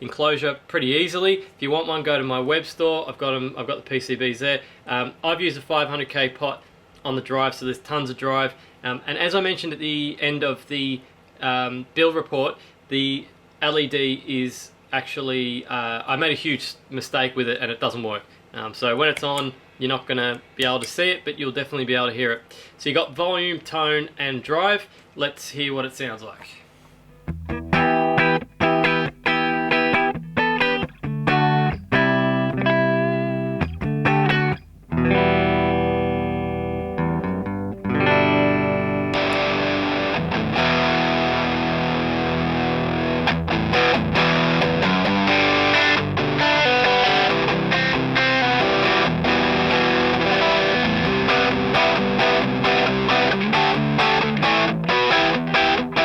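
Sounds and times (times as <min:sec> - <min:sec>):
overdriven electric guitar: 0:27.1 - 0:56.0.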